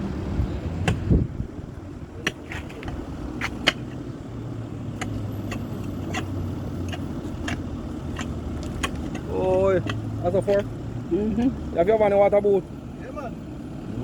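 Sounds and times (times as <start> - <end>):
low motor hum: 0.0 - 14.0
sharp clicks and knocks: 2.2 - 4.0, 5.0 - 10.7.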